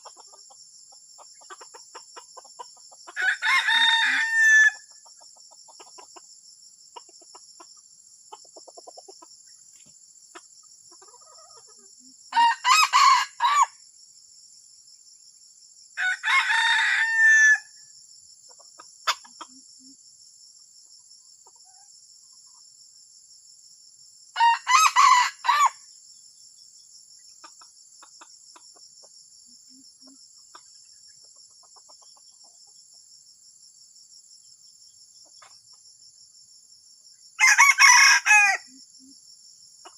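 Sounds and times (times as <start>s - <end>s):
high insect drone: 0.0s - 39.9s
rooster crowing: 3.2s - 4.9s, 12.3s - 13.8s, 16.0s - 17.7s, 24.4s - 25.8s, 37.4s - 38.7s.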